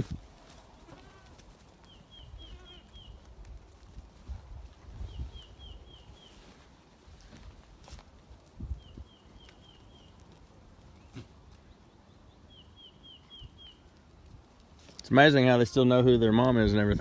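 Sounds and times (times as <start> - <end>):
small bird chirping: 1.9 - 3.2, 5.0 - 6.4, 8.7 - 10.2, 11.0 - 14.0.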